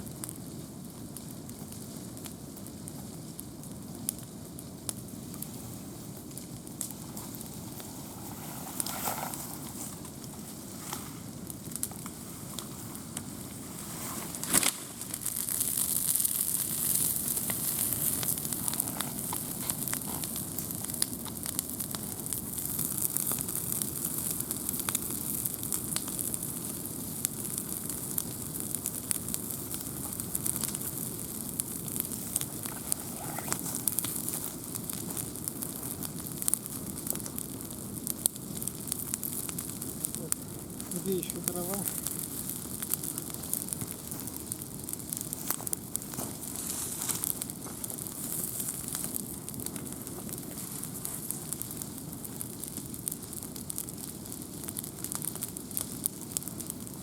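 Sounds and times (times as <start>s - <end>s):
campfire crackling and popping: 0.0s - 57.0s
fire hissing: 0.0s - 57.0s
loud wood snap: 14.4s - 14.9s.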